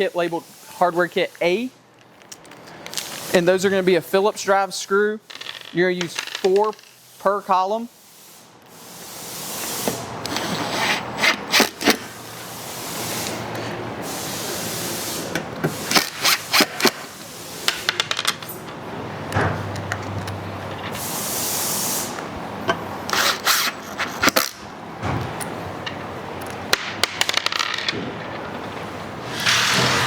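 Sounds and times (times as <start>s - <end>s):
impact drill driving screws: 15.7s - 17.0s, 29.3s - 30.0s.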